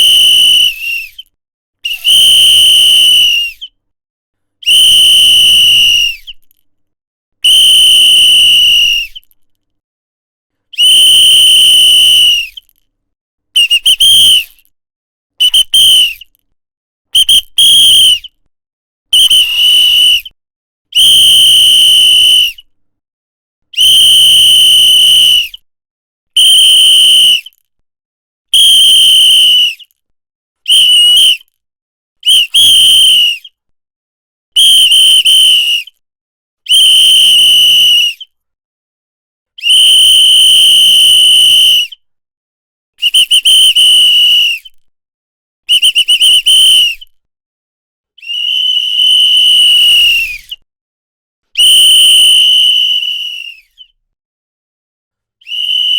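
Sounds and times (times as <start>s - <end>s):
high-pitched whistle blasts: 0.0s - 1.2s, 1.8s - 3.7s, 4.6s - 6.4s, 7.4s - 9.3s, 10.8s - 12.7s, 13.6s - 14.6s, 15.4s - 16.3s, 17.2s - 18.4s, 19.1s - 20.4s, 21.0s - 22.6s, 23.8s - 25.6s, 26.4s - 27.6s, 28.6s - 29.8s, 30.7s - 31.4s, 34.6s - 35.9s, 36.7s - 38.3s, 43.0s - 44.8s, 45.7s - 47.1s, 48.2s - 50.6s, 51.6s - 53.9s, 55.4s - 55.9s.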